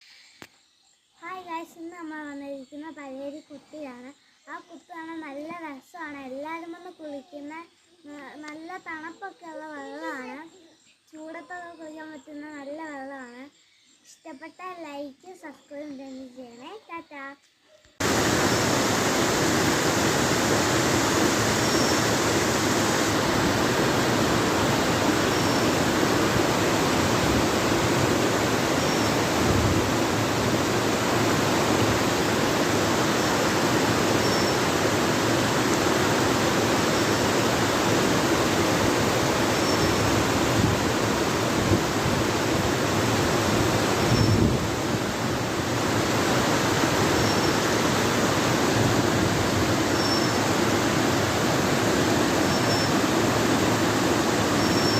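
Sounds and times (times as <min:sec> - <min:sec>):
waterfall rushing: 0:18.0 - 0:54.9.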